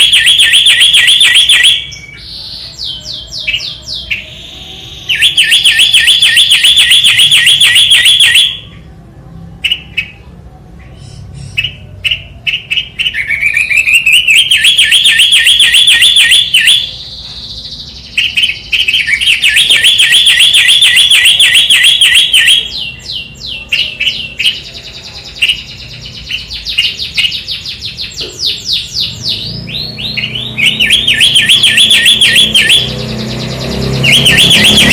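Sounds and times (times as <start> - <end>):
bird chirps: 10.8 - 34.9
songbird trilling: 25.4 - 34.9.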